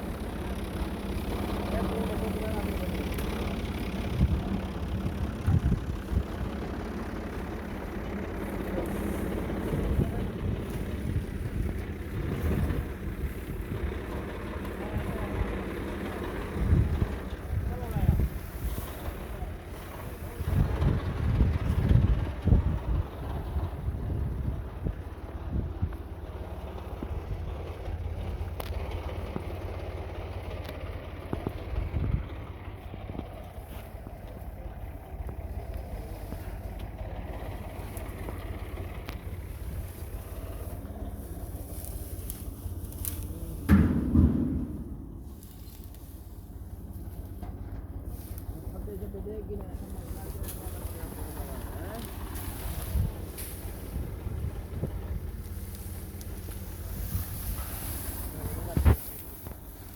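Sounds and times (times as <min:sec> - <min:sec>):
thresher mechanical rumble: 0:00.0 - 0:59.9
thresher mechanical drone: 0:34.6 - 0:59.9
heavy mechanical thumps: 0:43.6 - 0:46.0.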